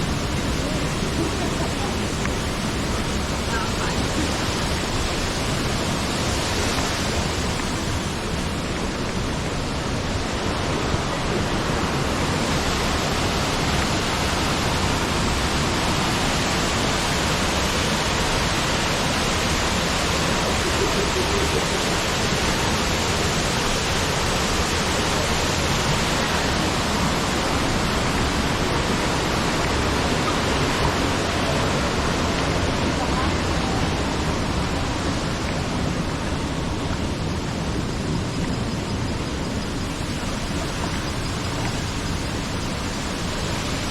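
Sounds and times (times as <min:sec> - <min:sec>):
waterfall rushing: 0:00.0 - 0:43.9.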